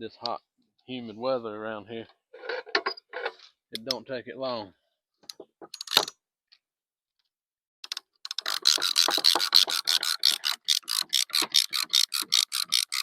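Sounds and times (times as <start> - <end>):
strap tensioner ratchet clicks: 7.8 - 13.0.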